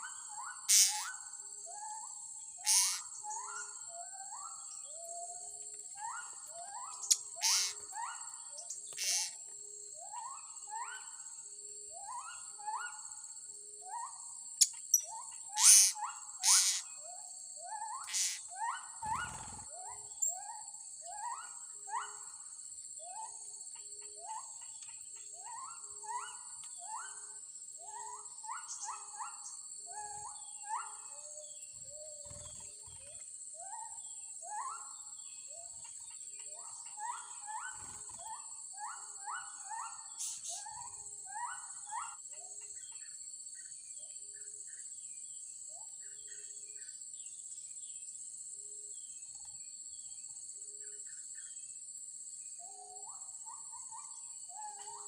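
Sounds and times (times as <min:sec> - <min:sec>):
high insect drone: 0:00.0 - 0:55.0
animals making rising calls: 0:02.6 - 0:03.0, 0:07.4 - 0:07.9.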